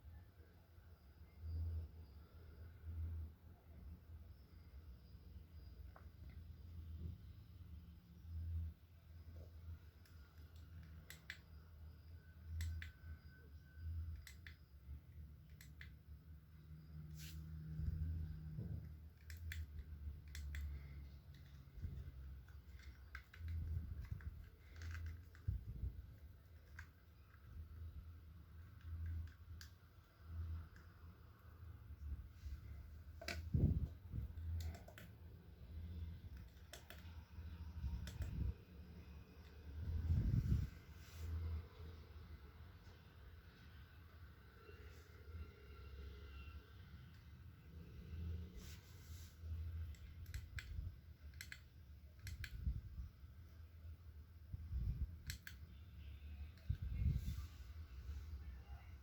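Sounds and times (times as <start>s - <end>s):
low steady hum: 0.0s - 59.0s
small objects clicking: 19.2s - 25.8s.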